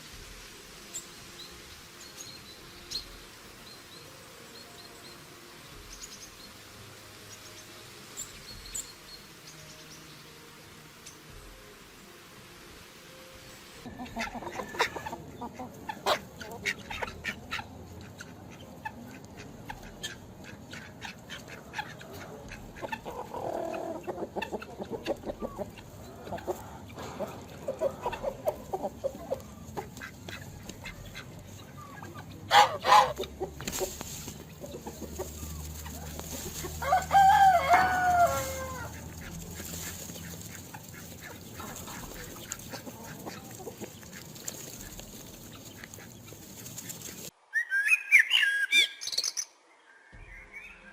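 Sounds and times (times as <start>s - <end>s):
chickens clucking and squawking: 12.8s - 48.6s.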